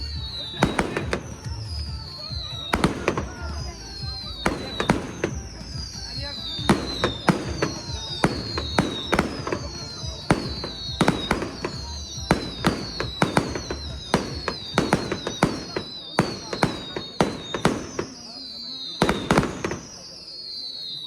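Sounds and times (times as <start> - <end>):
fireworks bangs and crackles: 0.0 - 21.0
fireworks whistling down in pitch: 0.0 - 21.0.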